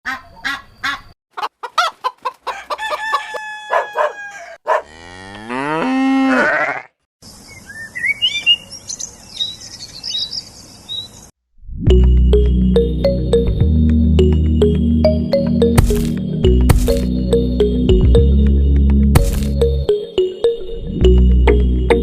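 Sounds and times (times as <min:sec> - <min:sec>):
hens clucking: 0:00.1 - 0:04.8
cow mooing: 0:04.3 - 0:07.0
small birds chirping: 0:07.2 - 0:11.3.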